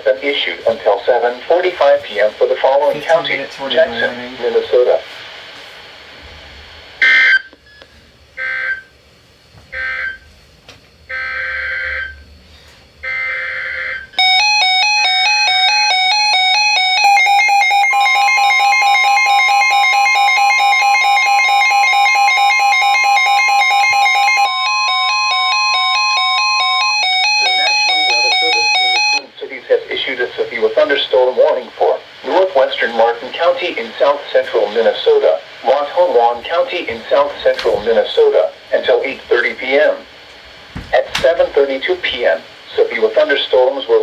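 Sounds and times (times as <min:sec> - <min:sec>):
steady alarm tone: 0:07.0 - 0:07.6, 0:08.3 - 0:09.0, 0:09.7 - 0:10.4, 0:11.0 - 0:12.3, 0:13.0 - 0:29.4
alternating electronic alert chime: 0:13.3 - 0:29.2.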